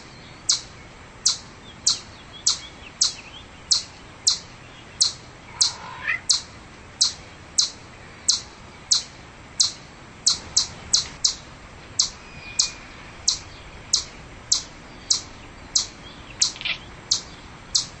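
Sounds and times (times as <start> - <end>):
faint bird calls: 0.0 - 18.0
chipmunk chip call: 0.5 - 18.0.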